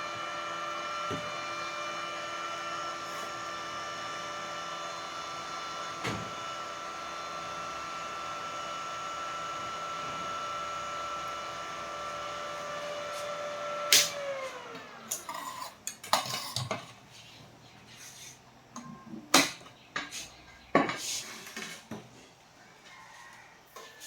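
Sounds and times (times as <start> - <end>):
welding machine cooling fan whirring: 0.0 - 16.5.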